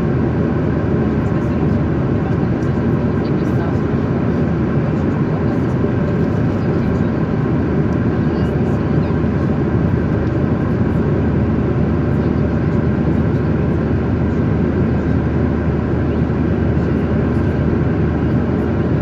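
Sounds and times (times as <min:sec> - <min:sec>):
airflow over fuselage: 0:00.0 - 0:19.0
jet engines rushing: 0:00.0 - 0:19.0.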